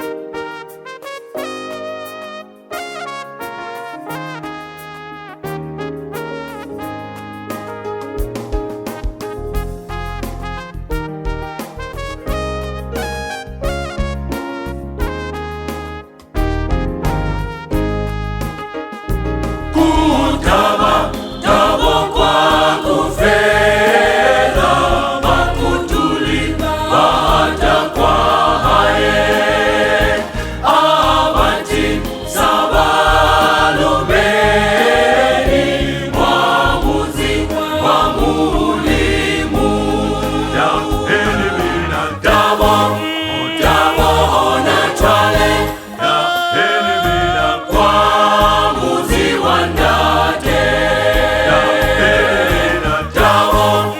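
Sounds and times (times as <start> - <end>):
instrumental backing with bass: 0.0 - 53.9
choir singing gospel: 19.6 - 53.9.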